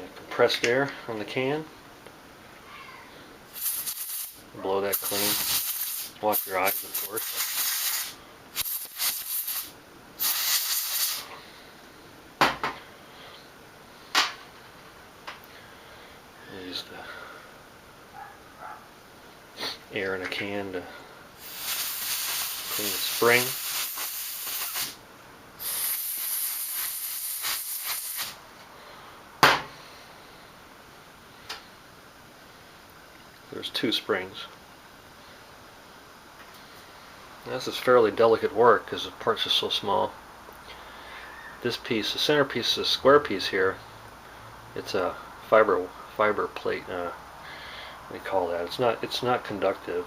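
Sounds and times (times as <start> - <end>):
compressed air hissing: 3.5 - 11.5, 21.4 - 25.0, 25.6 - 28.4.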